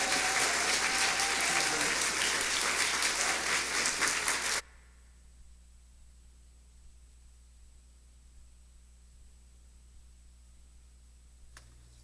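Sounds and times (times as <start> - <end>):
audience applauding: 0.0 - 4.6.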